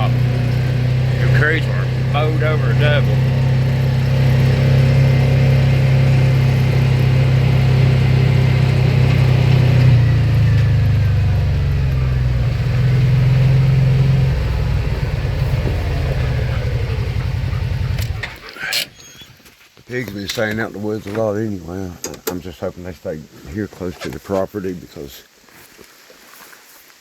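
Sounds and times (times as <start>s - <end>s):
vehicle engine running: 0.0s - 18.8s.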